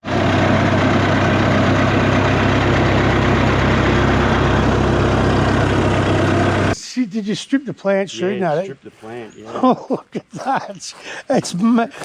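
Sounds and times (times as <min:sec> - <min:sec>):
wood chipper engine drone: 0:00.0 - 0:06.8.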